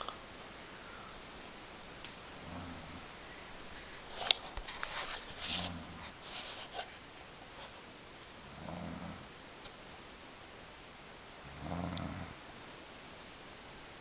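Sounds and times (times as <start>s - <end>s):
woman snoring: 8.5s - 9.3s, 11.4s - 12.4s.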